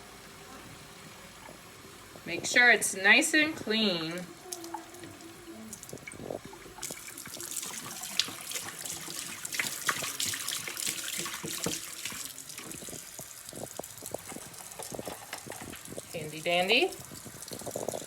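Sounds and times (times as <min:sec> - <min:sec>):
tap water splashing into sink: 0:03.7 - 0:16.2.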